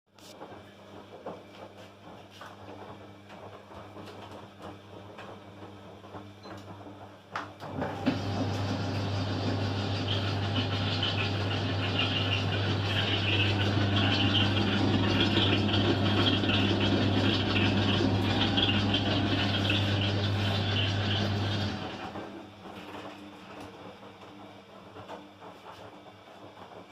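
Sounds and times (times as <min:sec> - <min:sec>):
clothes dryer motor hum: 0:00.1 - 0:26.9
grating noise from turning drum: 0:08.0 - 0:22.2.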